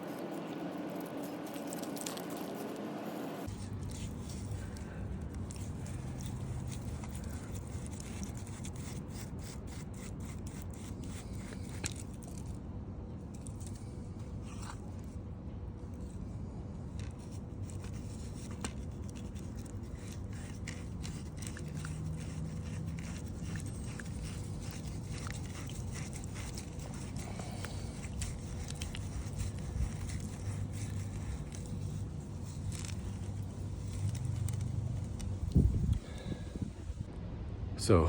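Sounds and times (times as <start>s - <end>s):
dirt scraped and dug by hand: 0.0s - 12.6s, 15.9s - 37.1s.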